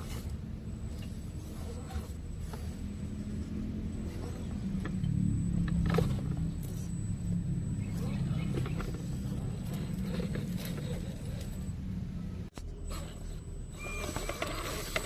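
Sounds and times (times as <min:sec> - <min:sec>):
electric motor growling: 0:00.0 - 0:11.8.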